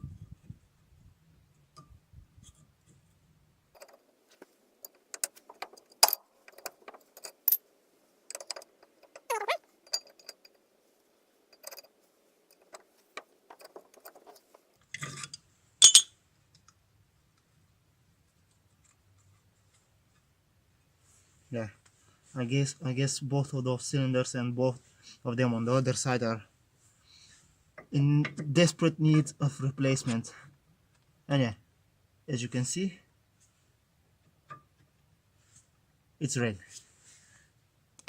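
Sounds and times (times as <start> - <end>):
short falling squeak: 9.3 - 9.6
metallic clinks of tools: 15.1 - 16.1.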